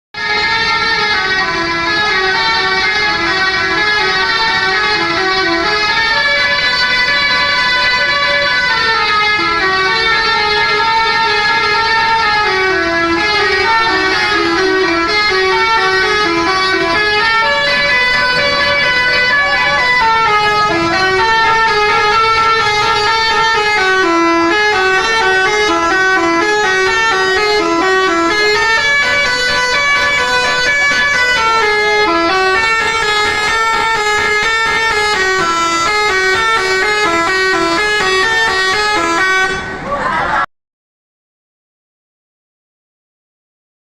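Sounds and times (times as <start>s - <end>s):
bus noise: 0.1s - 40.5s
musical bus horn tune: 0.2s - 40.0s.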